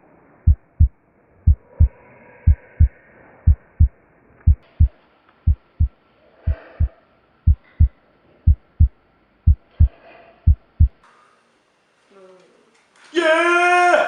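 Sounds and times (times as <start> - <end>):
heartbeat thumps: 0.4 - 11.0.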